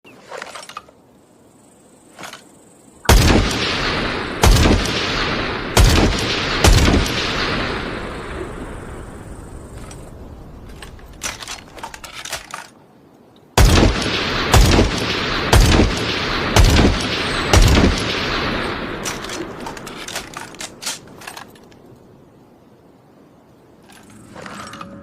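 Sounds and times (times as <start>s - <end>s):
rifle shots with booming echo: 3.1s - 9.0s, 13.6s - 20.2s
rifle clicks: 9.7s - 12.8s, 13.4s - 21.8s.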